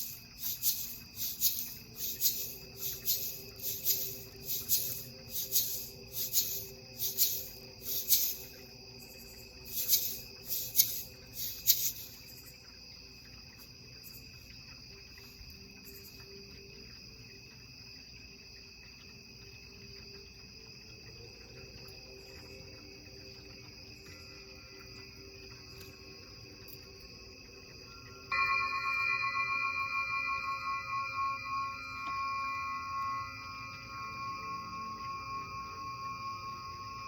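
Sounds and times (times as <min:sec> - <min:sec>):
shaker strokes: 0:00.0 - 0:08.7, 0:09.6 - 0:12.5, 0:28.3 - 0:37.0
steady ringing tones: 0:00.0 - 0:13.6, 0:23.3 - 0:37.0.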